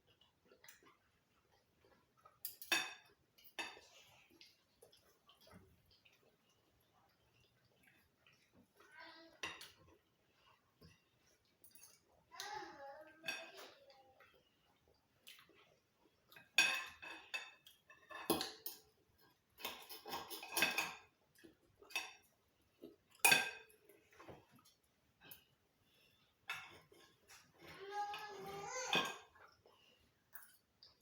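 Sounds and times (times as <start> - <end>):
cutlery and plates clinking: 2.2 - 4.2, 16.3 - 22.4, 23.0 - 25.5, 26.5 - 27.8, 28.4 - 29.6.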